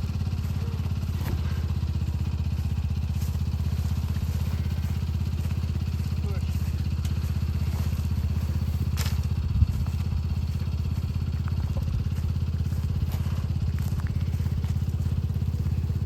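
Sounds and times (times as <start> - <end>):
engine running steadily: 0.0 - 16.0.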